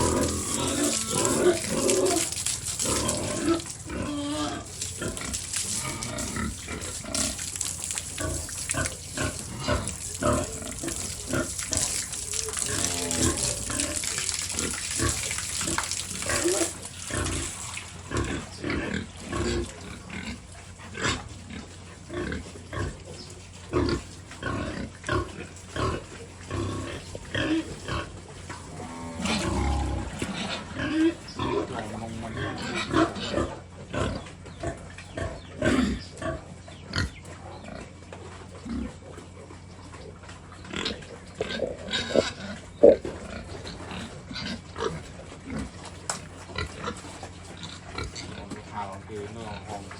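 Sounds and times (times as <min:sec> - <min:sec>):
water spraying hiss: 0:00.0 - 0:18.2
pigs grunting: 0:00.0 - 0:49.9.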